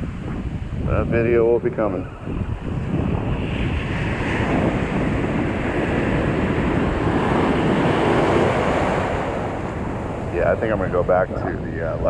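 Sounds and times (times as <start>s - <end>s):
ocean surf washing on beach: 0.0s - 12.0s
wind noise on microphone: 0.0s - 12.0s.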